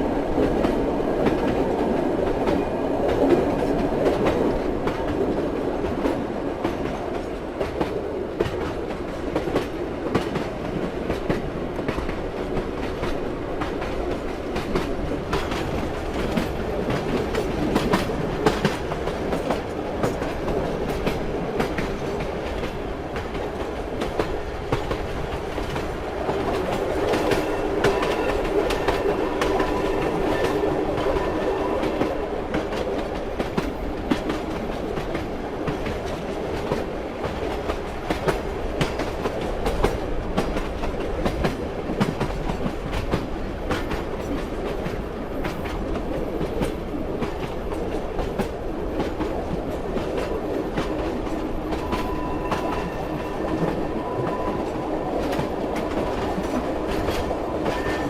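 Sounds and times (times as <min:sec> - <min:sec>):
train rumble: 0:00.0 - 0:58.0
train wheels clicking over rail joints: 0:00.0 - 0:58.0.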